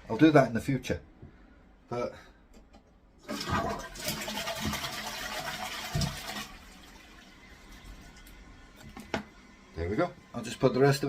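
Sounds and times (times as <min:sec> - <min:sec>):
toilet flushing: 0:03.2 - 0:11.0.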